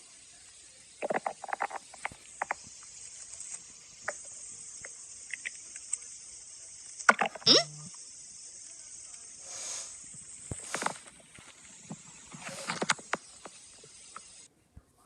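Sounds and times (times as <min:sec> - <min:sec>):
stomach growling: 0:00.9 - 0:06.0, 0:07.0 - 0:08.0, 0:10.0 - 0:14.5.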